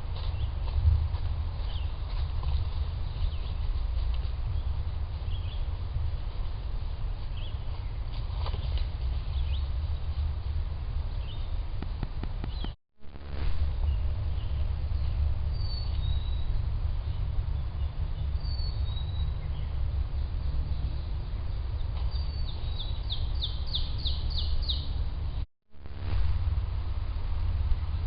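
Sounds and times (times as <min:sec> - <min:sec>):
steady low rumble: 0:00.0 - 0:28.0
small birds chirping: 0:01.6 - 0:05.8, 0:07.2 - 0:10.2, 0:12.4 - 0:12.8, 0:13.8 - 0:25.0.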